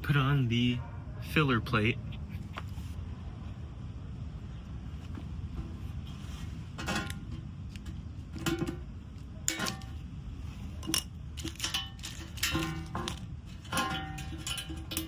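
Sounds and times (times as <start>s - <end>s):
steady low rumble: 0.0s - 15.0s
metal hardware clinking: 6.8s - 15.0s.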